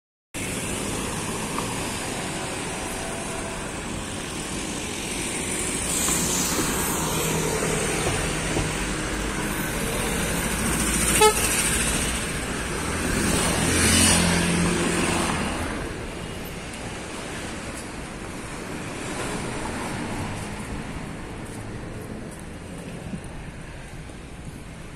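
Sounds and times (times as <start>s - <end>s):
cars passing close by: 0.4s - 24.9s
short car horn toot: 11.2s - 11.5s.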